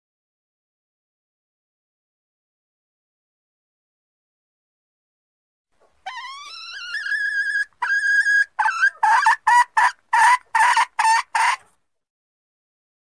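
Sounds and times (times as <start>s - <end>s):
hen clucking: 5.8s - 11.7s
junglefowl hen calling: 5.9s - 11.7s.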